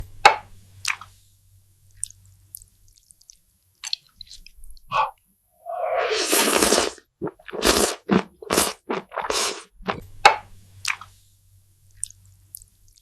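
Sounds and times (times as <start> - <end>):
chewing and crunching: 6.3 - 10.1.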